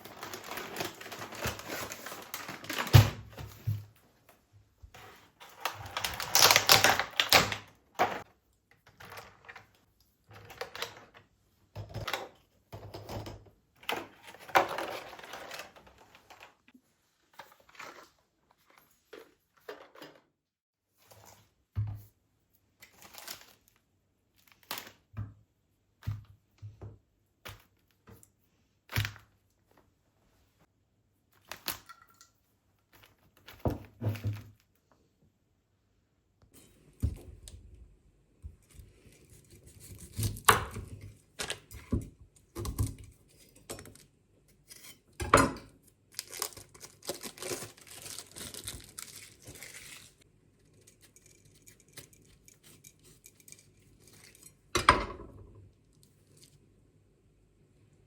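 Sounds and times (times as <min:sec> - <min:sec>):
rustling and crinkling: 0:00.0 - 0:07.4, 0:45.9 - 0:54.7.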